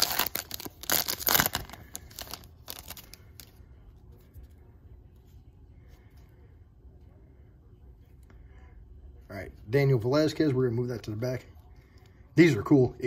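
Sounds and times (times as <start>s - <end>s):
foil card pack tearing and crinkling: 0.0s - 3.2s.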